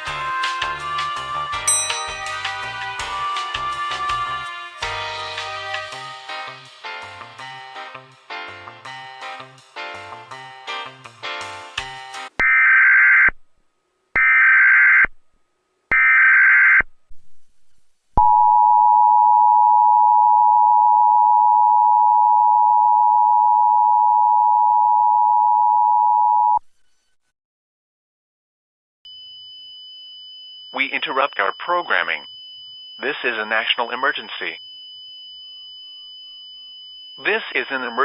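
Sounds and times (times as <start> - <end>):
light instrumental tune: 0.0 - 12.3.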